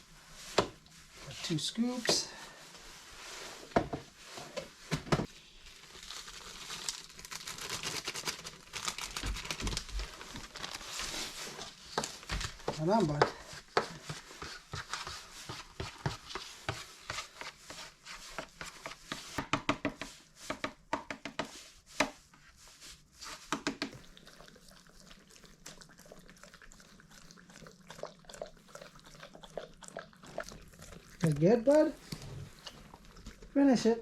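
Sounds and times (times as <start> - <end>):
dog licking from a dish: 24.0 - 33.5.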